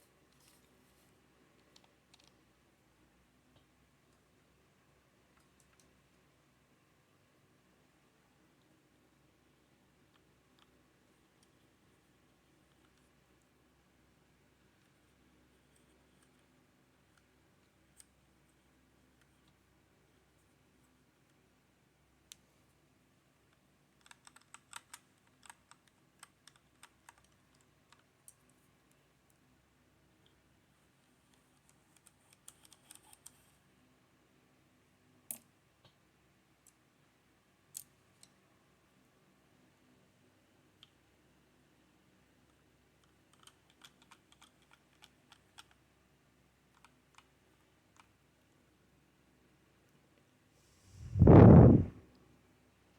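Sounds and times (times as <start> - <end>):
faint mechanical keyboard keystrokes: 1.6 - 2.4, 23.5 - 28.5, 31.3 - 33.5, 43.0 - 45.8.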